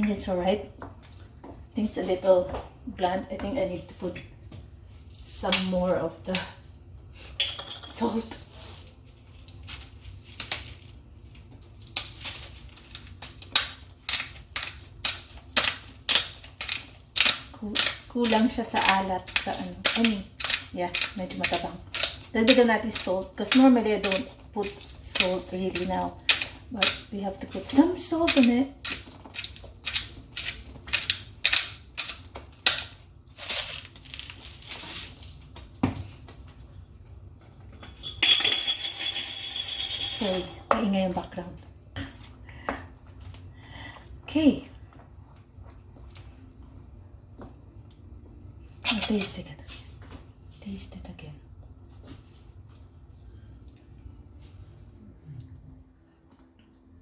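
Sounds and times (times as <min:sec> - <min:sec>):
utensils clinking against cookware: 0:07.3 - 0:08.3, 0:37.8 - 0:40.9.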